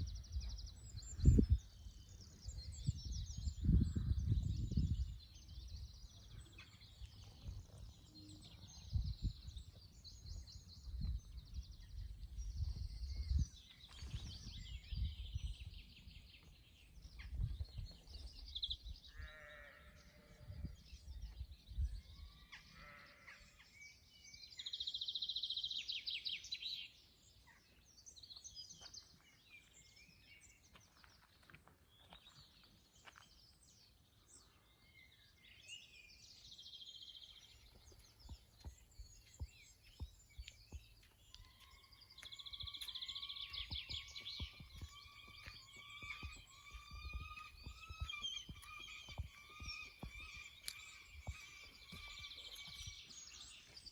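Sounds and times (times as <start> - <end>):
wind rumbling on microphone: 0.0 - 22.4, 37.4 - 53.9
birds chirping: 0.0 - 53.9
sheep bleating: 19.1 - 20.4, 22.8 - 23.4.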